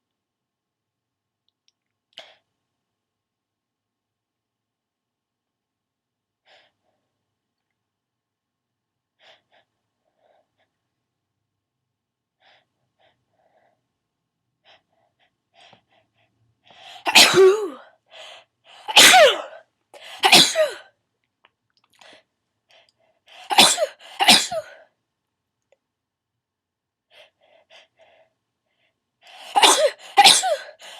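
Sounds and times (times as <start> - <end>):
person sneezing: 16.9 - 17.9, 18.8 - 20.9, 23.4 - 24.8, 29.4 - 30.9.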